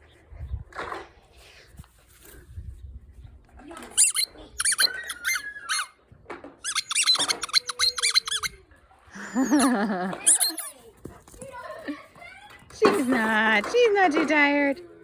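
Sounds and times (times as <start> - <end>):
squeaky dog toy squeaking: 4.0 - 6.0, 6.6 - 8.6, 9.4 - 10.8.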